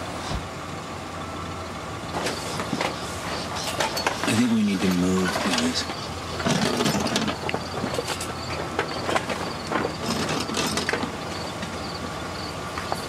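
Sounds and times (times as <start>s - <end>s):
metallic knocks and clanks: 3.6s - 12.0s.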